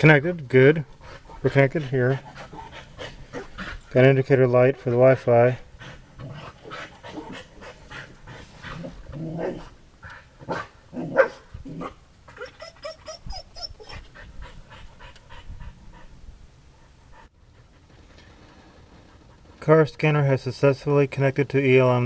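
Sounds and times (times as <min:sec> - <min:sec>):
dog panting: 0:00.7 - 0:09.1, 0:12.6 - 0:19.6
dog whining: 0:11.0 - 0:14.2.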